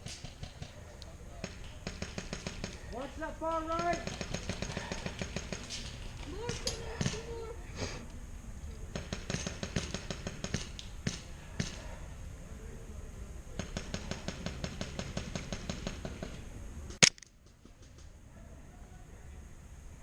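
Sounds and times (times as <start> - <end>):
single airsoft shots: 17.0 - 17.2
automatic airsoft rifle firing: 17.0 - 17.3
loud sharp crack: 17.0 - 17.3.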